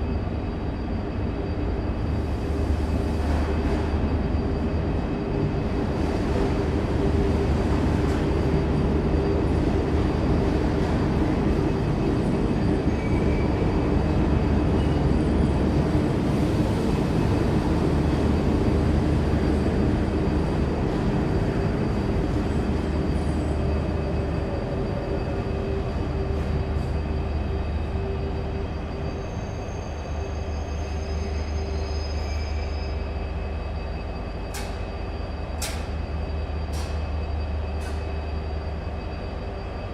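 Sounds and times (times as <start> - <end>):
train rumbling: 0.0 - 39.9
constant hum: 33.0 - 39.9.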